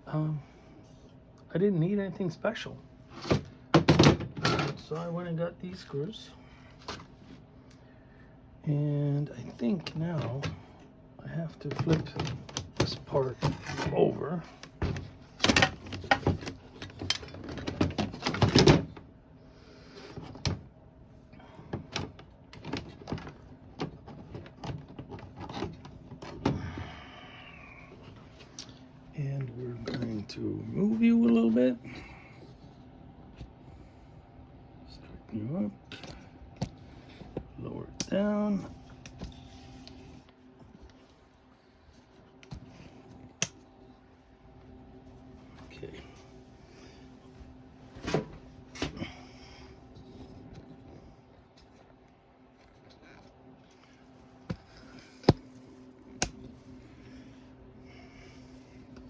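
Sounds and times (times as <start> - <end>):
faint steady hum: 0.0 - 59.0.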